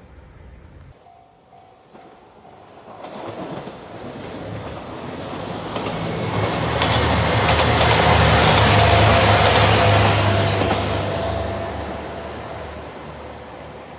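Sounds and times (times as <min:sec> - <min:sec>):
train wheels clicking over rail joints: 0:01.5 - 0:11.0.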